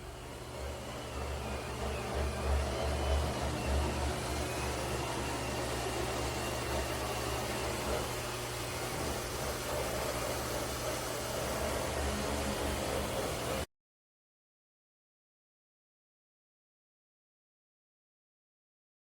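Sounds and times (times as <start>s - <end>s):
robot vacuum whirring: 0.0s - 13.7s.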